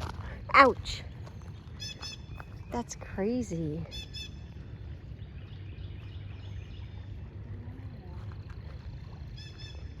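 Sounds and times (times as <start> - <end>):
sharp bird calls: 1.1 - 7.5, 9.2 - 10.0.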